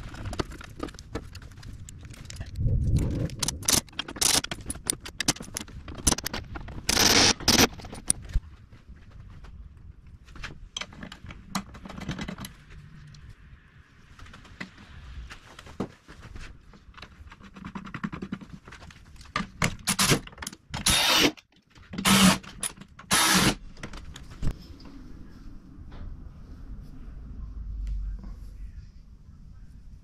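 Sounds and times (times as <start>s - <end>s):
small parts clicking and rattling: 0.0s - 8.4s, 10.7s - 13.3s.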